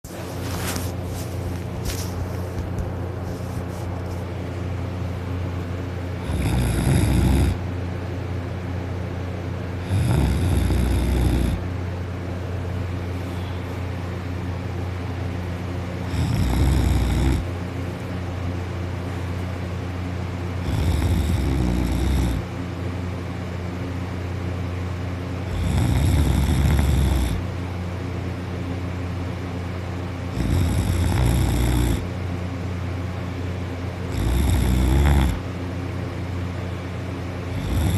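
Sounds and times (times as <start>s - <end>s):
low background hum: 0.0s - 37.9s
person snoring loudly: 6.2s - 7.6s, 9.8s - 11.6s, 16.0s - 17.5s, 20.6s - 22.5s, 25.5s - 27.4s, 30.3s - 32.1s, 34.1s - 35.4s, 37.5s - 37.9s.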